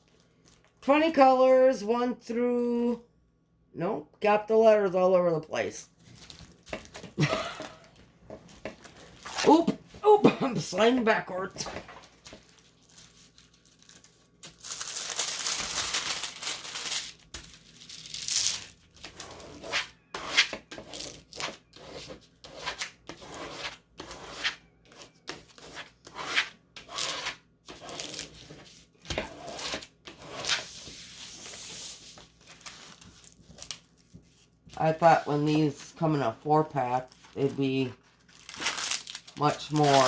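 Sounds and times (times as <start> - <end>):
packaging crinkling and rustling: 6.0 - 7.3, 7.9 - 9.5, 11.8 - 19.0, 31.0 - 34.6, 36.9 - 40.0
packaging tearing: 12.2 - 18.9, 38.0 - 40.0.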